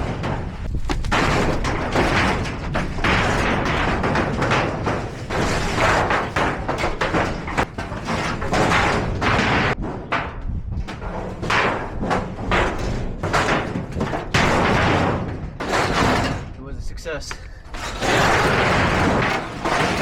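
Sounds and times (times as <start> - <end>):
sheet metal panels clanging: 0.0 - 16.8, 17.7 - 20.0.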